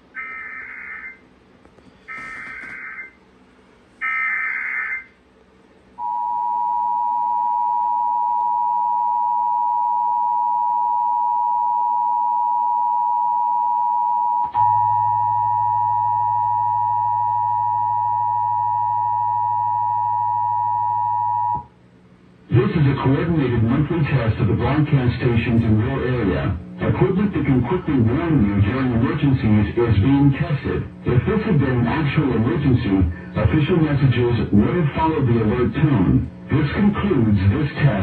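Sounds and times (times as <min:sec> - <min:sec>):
low hum: 0:00.0 - 0:38.0
two-tone attention signal: 0:06.0 - 0:21.7.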